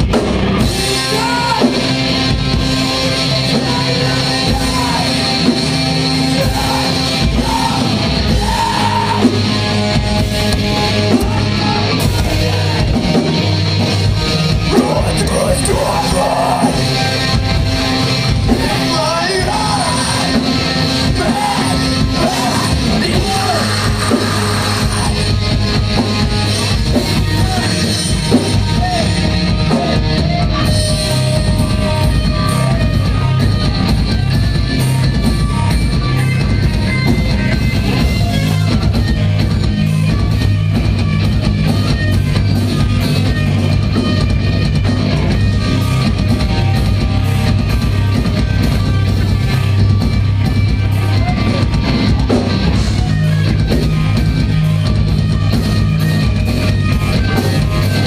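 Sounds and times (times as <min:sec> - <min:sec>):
distorted electric guitars and bass: 0:00.0 - 0:58.0
fast drumming: 0:00.0 - 0:58.0
person singing: 0:14.7 - 0:16.9.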